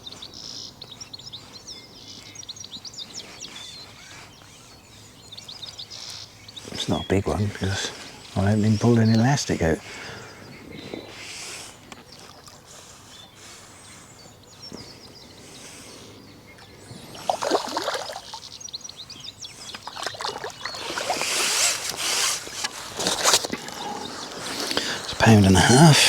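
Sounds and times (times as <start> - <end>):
fish splashing at water surface: 17.1 - 18.4, 19.7 - 21.8.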